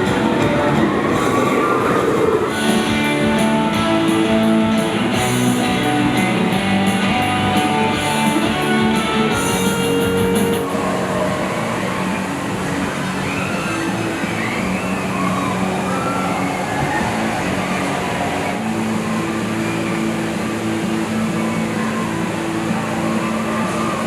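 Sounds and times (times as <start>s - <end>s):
steady beat: 0.0s - 1.6s, 2.5s - 10.7s
guitar music: 0.0s - 1.8s, 2.4s - 10.8s.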